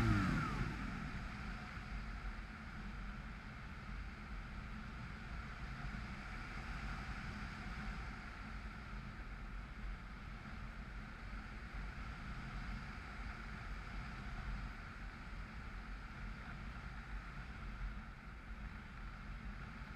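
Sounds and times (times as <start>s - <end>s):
airflow rushing: 0.0s - 1.3s
electric motor rumble: 0.0s - 1.6s.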